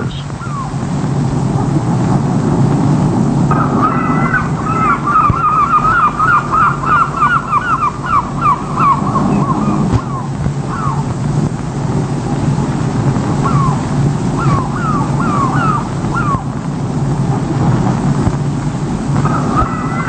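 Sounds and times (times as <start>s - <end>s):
bird squawking harshly: 0.0s - 0.7s, 3.5s - 11.0s, 14.4s - 16.4s
steady low rumble: 0.0s - 20.0s.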